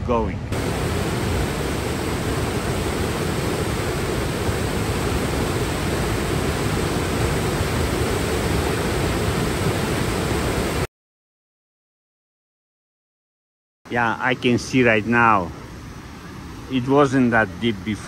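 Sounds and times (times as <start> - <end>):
waterfall rushing: 0.6 - 10.9.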